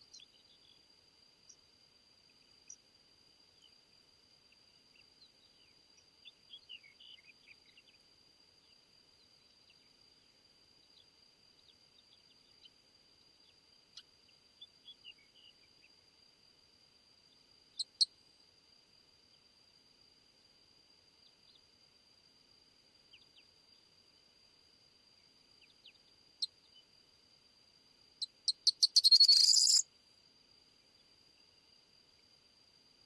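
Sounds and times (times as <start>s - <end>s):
faint birds chirping: 0.0s - 2.9s, 3.5s - 16.0s, 23.0s - 24.0s, 25.1s - 27.0s, 28.1s - 29.8s.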